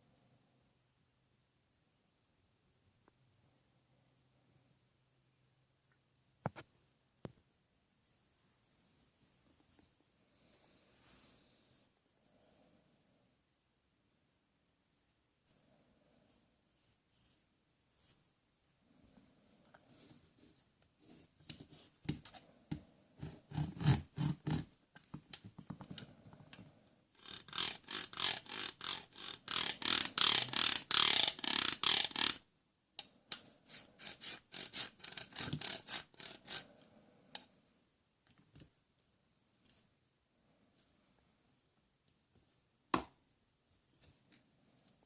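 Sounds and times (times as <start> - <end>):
plastic toy tools clicking: 27.2 - 32.4.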